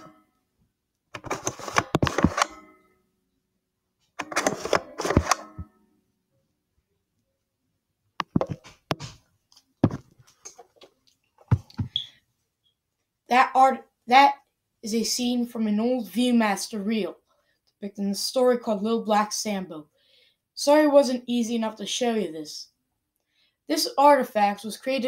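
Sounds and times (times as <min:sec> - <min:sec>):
plastic clicks and knocks: 0:08.2 - 0:12.0.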